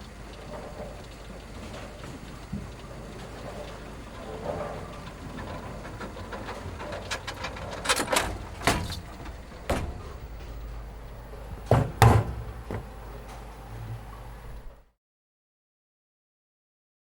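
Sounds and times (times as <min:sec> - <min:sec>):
steady low hum: 0:00.0 - 0:14.9
knocks and bangs: 0:08.3 - 0:10.7, 0:11.4 - 0:13.0.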